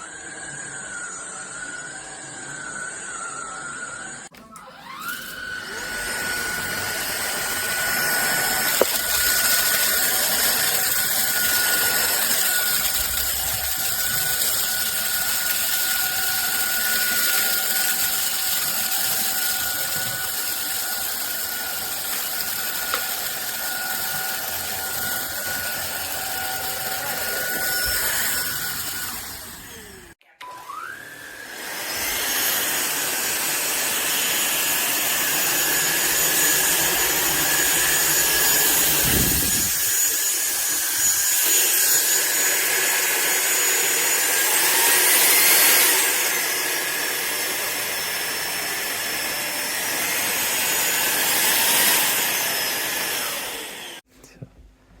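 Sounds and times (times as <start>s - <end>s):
vacuum cleaner motor whine: 0.0s - 54.1s
rushing air: 38.0s - 39.9s.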